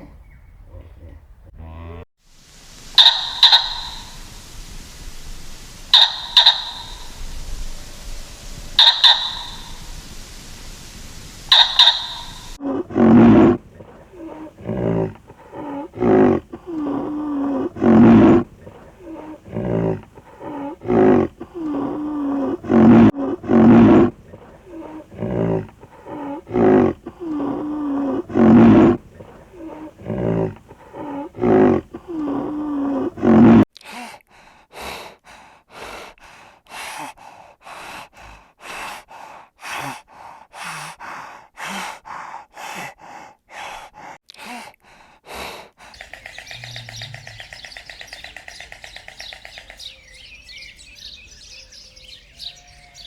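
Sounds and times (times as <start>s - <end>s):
animal roaring calls: 2.9s - 33.6s, 46.0s - 53.0s
rapid breathy puffs: 9.6s - 33.3s, 33.9s - 53.0s.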